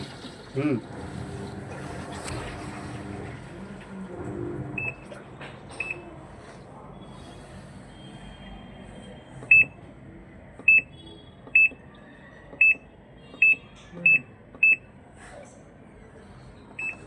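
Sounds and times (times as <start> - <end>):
washing machine button beeps: 4.8 - 5.2, 5.8 - 6.2, 9.4 - 9.8, 10.6 - 11.9, 12.6 - 14.9, 16.8 - 17.0.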